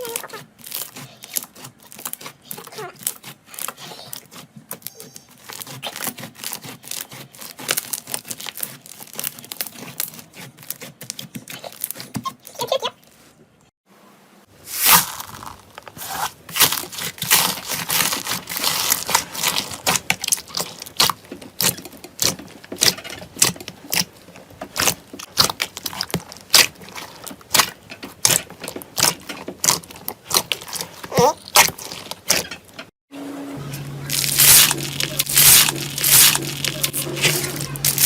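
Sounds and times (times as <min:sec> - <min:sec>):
slime squeezed by hand: 0:14.7 - 0:19.9, 0:34.1 - 0:38.0.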